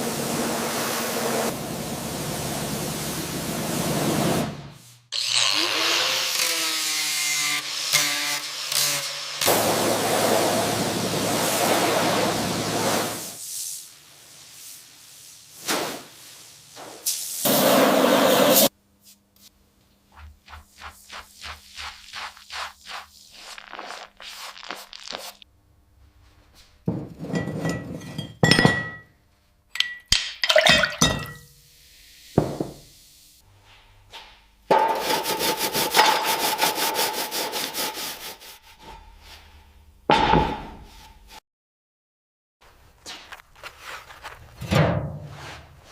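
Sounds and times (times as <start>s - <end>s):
scraping or brushing strokes: 11.3s - 25.5s, 34.9s - 39.6s.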